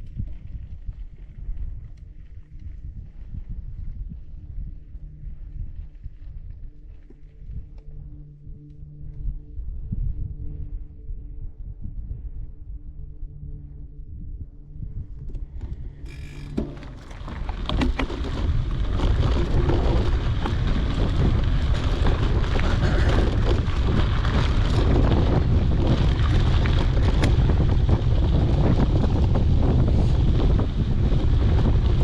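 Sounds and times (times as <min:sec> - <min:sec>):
bike tyres crunching on trail: 0:00.0 - 0:07.7, 0:15.5 - 0:32.0
low steady hum: 0:00.0 - 0:32.0
wind buffeting microphone: 0:00.0 - 0:32.0.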